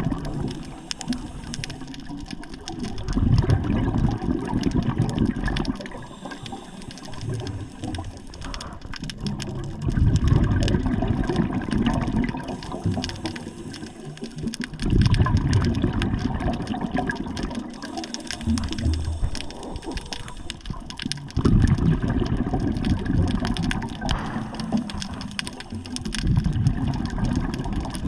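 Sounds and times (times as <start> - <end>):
small clicks: 0.1 - 28.0.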